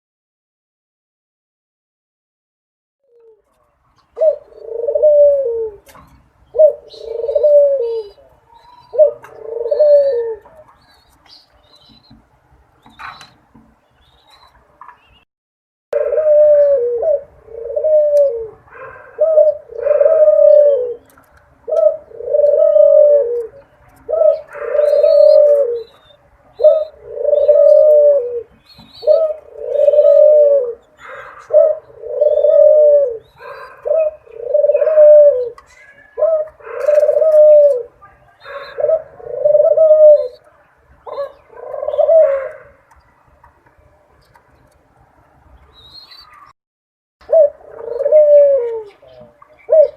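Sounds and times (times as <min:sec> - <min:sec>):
dove cooing: 0:04.1 - 0:11.1, 0:16.0 - 0:42.9, 0:47.2 - 0:49.9.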